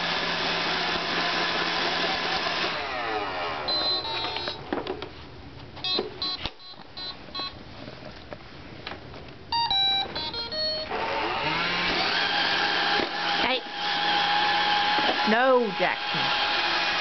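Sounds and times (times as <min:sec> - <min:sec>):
robot vacuum beeps: 0:03.7 - 0:04.6, 0:05.8 - 0:07.6, 0:09.5 - 0:11.0
falling electronic tones: 0:09.5 - 0:11.5
robot vacuum motor whirr: 0:10.9 - 0:17.0.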